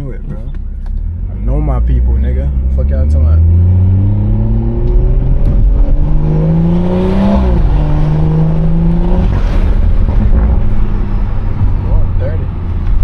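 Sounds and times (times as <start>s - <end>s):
car engine accelerating: 0.0s - 13.0s.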